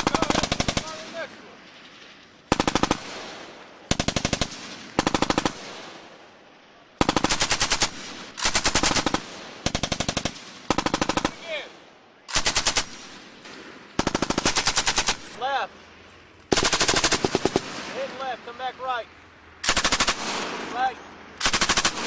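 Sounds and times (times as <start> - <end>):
machine gun firing bursts: 0.0 - 1.3, 2.5 - 5.9, 7.0 - 11.7, 12.3 - 13.2, 14.0 - 15.4, 16.5 - 18.2, 19.6 - 20.8, 21.4 - 22.0.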